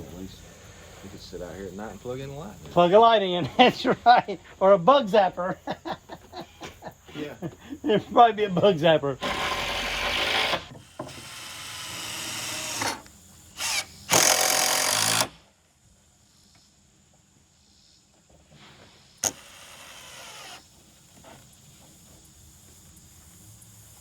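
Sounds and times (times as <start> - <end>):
power tool running: 9.2 - 15.4, 19.2 - 21.4.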